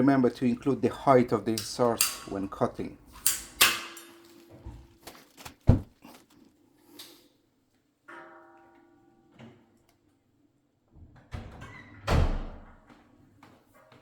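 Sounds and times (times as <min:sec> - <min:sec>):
metal pipe parts knocking and clicking: 0:00.6 - 0:04.8.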